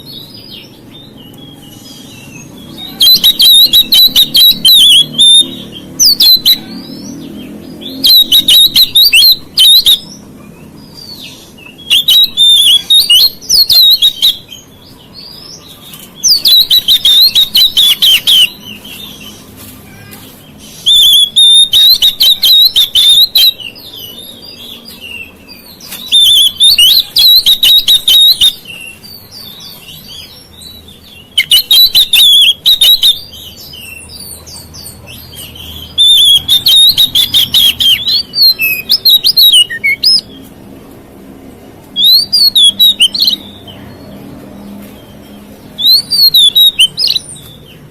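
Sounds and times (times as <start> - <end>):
bird singing clicky phrases: 41.8 - 47.9.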